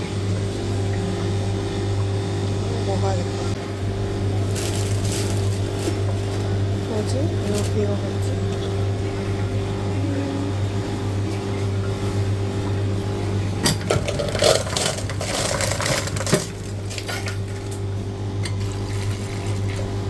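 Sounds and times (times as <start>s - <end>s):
electrical machine hum: 0.0s - 20.0s
cups clattering: 13.6s - 17.8s.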